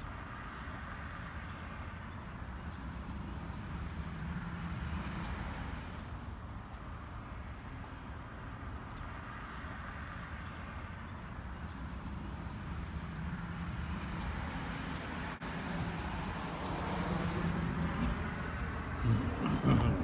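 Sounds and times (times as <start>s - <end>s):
moving vehicle rumble: 0.0s - 20.0s.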